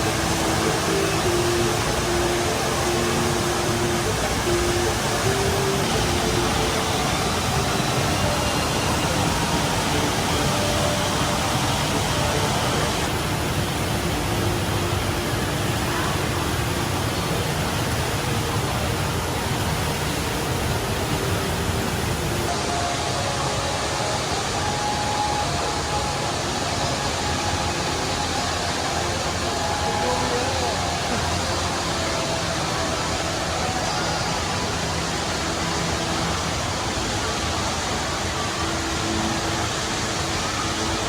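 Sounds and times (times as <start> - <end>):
faint hum of people: 0.0 - 41.0
indoor waterfall rushing: 0.0 - 41.0.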